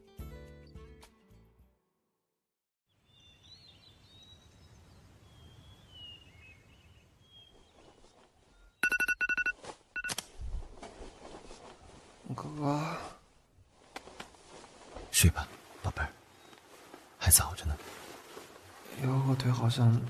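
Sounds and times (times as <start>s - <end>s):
birds chirping: 3.0s - 8.8s, 15.2s - 17.8s
electronic alarm beeping: 8.8s - 10.1s.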